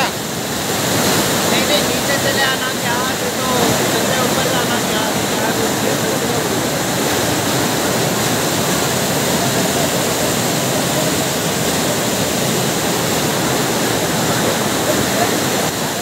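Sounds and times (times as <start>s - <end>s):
floodwater rushing torrent: 0.0s - 16.0s.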